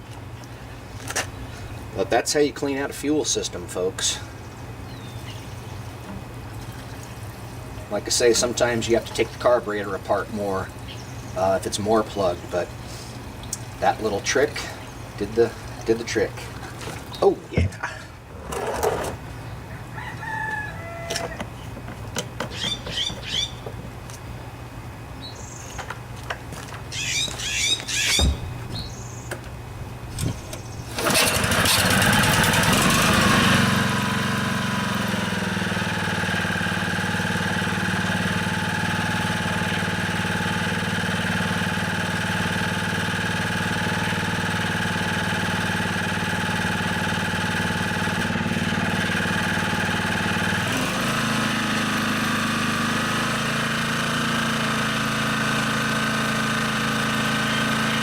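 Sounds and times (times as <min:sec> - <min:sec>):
lawnmower engine running: 0:06.1 - 0:19.5, 0:29.9 - 0:58.0.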